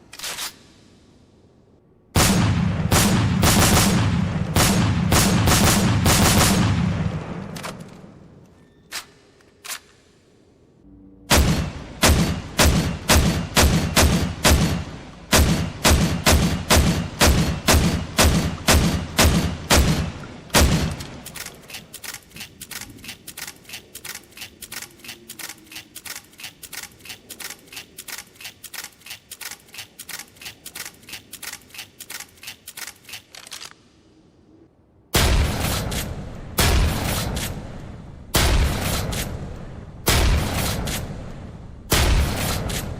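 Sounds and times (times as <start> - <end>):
quieter sharper gunshots: 2.1 - 8.3, 11.3 - 23.6, 35.2 - 42.9
heavy gunshots in rapid strings: 2.2 - 7.6, 11.3 - 21.3, 35.2 - 37.7, 38.3 - 41.2.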